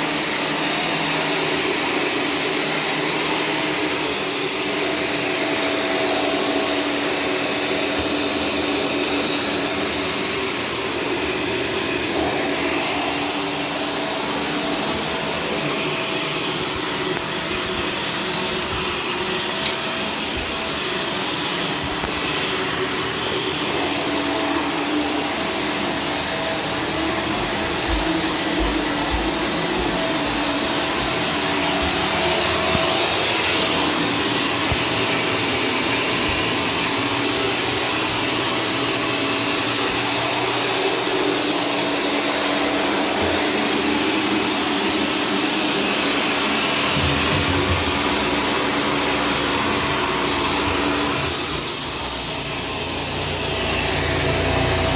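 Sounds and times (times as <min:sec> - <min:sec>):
vacuum cleaner running: 0:00.0 - 0:54.9.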